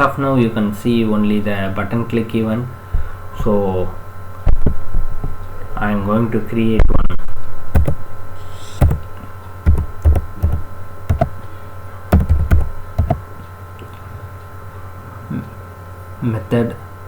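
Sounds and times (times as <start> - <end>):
electrical hum: 0.0 - 17.0
computer keyboard typing: 7.8 - 8.0, 8.8 - 9.1, 9.7 - 11.4, 12.2 - 13.2.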